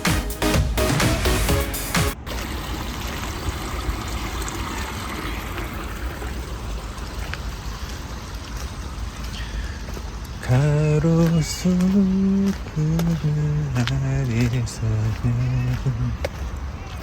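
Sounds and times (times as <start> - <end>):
electronic music: 0.0 - 2.4.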